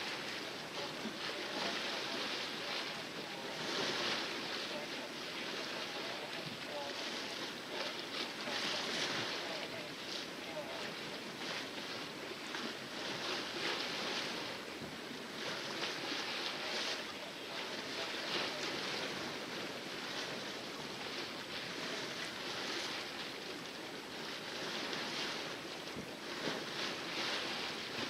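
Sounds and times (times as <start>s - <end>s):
water rushing along a boat hull: 0.0s - 28.0s.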